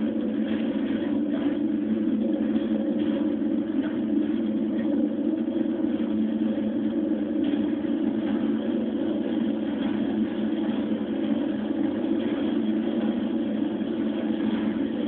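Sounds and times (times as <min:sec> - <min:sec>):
low rumbling drone: 0:00.0 - 0:15.0
noisy hiss: 0:00.0 - 0:15.0.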